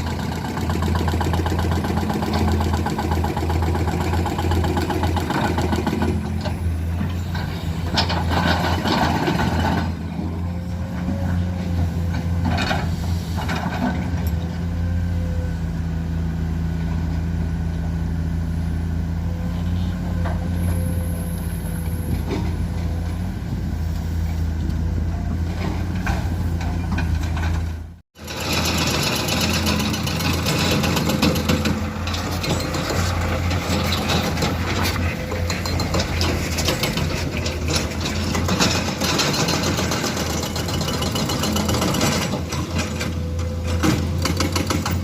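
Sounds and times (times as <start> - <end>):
diesel machinery engine drone: 0.0 - 45.0
machinery knocks and clatter: 24.6 - 45.0.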